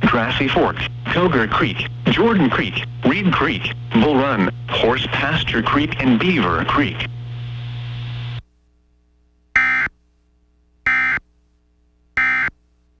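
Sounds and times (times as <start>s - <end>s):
low hum with hiss: 0.0s - 13.0s.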